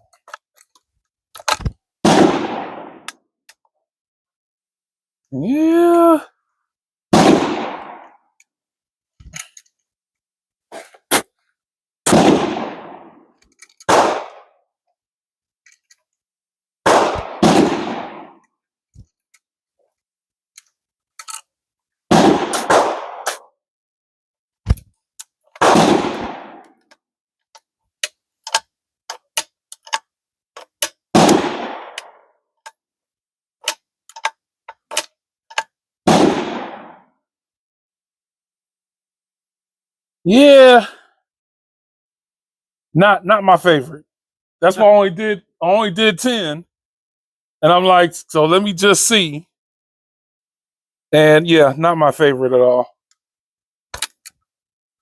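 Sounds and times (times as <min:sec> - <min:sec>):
gunshots: 0:02.0 - 0:03.1, 0:07.1 - 0:08.1, 0:12.1 - 0:13.2, 0:13.9 - 0:14.5, 0:16.9 - 0:18.4, 0:22.1 - 0:23.4, 0:25.6 - 0:26.6, 0:31.2 - 0:32.0, 0:36.1 - 0:37.0
sharp clicks and cracks: 0:33.6 - 0:35.7, 0:54.0 - 0:54.4.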